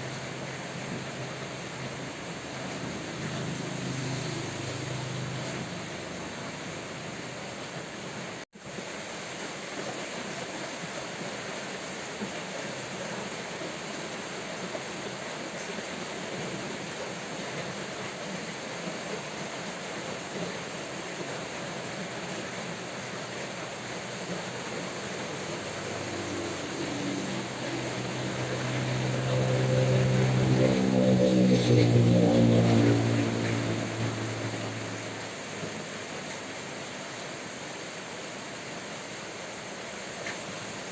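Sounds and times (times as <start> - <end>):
vehicle engine hum: 0.0 - 8.4, 21.8 - 38.4
rain hiss: 0.0 - 31.0, 32.3 - 40.9.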